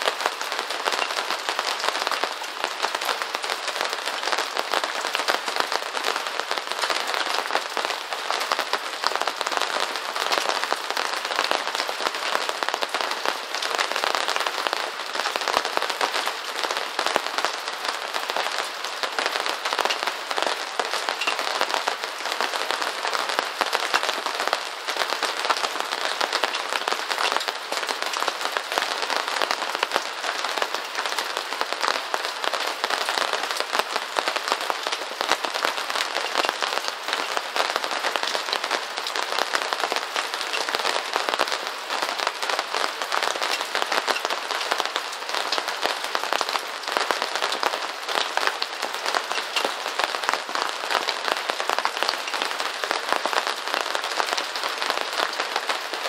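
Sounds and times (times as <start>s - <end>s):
steady rain pattering: 0.0s - 56.0s.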